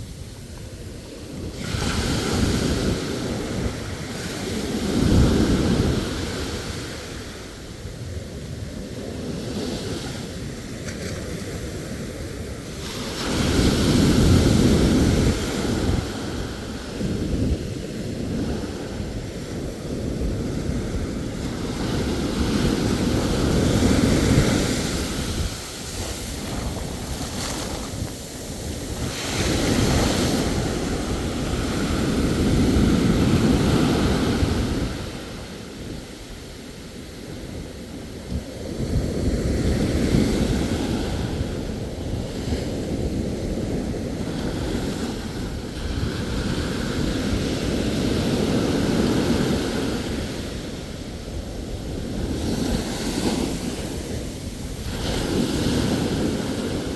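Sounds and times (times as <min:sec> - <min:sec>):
ocean waves washing on shore: 0:00.0 - 0:56.9
wind buffeting microphone: 0:00.0 - 0:56.9.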